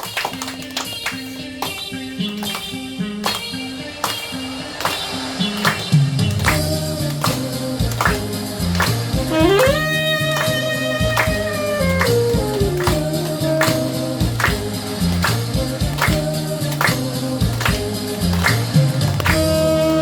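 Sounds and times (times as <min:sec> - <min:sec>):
backing track with steady beat: 0:00.0 - 0:20.0
saxophone slow melody: 0:09.1 - 0:14.4, 0:19.4 - 0:20.0.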